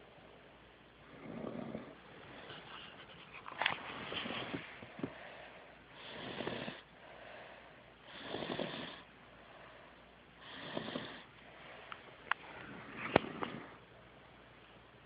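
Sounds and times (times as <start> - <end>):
quiet breaths: 0.0 - 15.0
heavy snoring: 1.1 - 2.0, 6.0 - 6.9, 8.0 - 9.1, 10.4 - 11.3.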